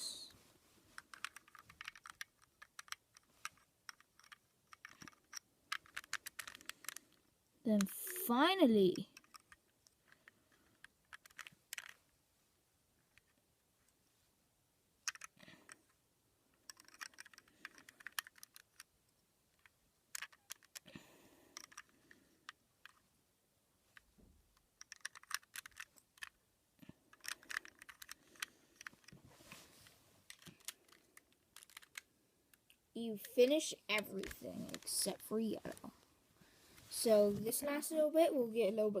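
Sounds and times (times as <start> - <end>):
plastic puzzle cube clicking: 1.0 - 8.2, 9.1 - 12.0, 15.0 - 15.9, 16.5 - 18.9, 19.5 - 20.9, 21.5 - 23.0, 24.0 - 26.4, 27.1 - 29.2, 30.3 - 32.8, 34.0 - 35.9.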